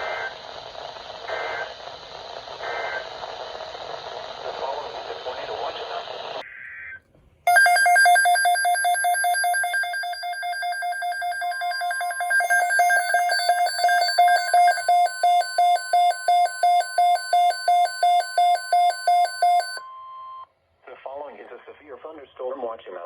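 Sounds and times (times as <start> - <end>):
fast electronic beeping: 7.5 - 19.8.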